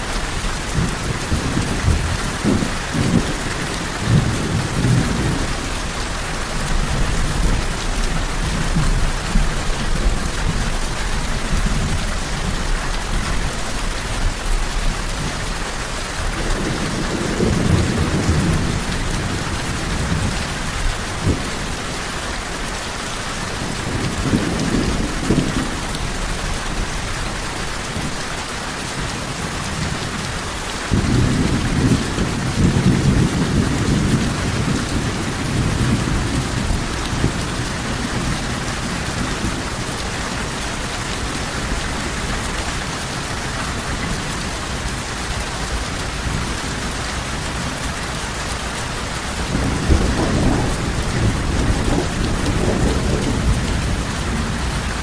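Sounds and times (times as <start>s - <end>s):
steady rain: 0.0s - 55.0s
thunder rolling: 0.1s - 12.0s, 16.4s - 22.1s, 30.9s - 42.9s, 49.4s - 55.0s.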